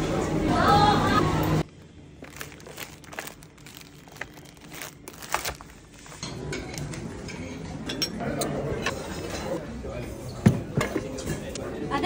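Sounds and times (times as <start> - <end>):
crinkling rustles: 2.2 - 6.2.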